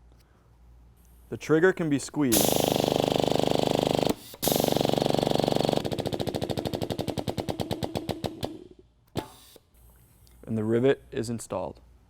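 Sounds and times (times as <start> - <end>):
riveting tool buzzing: 2.3 - 6.0.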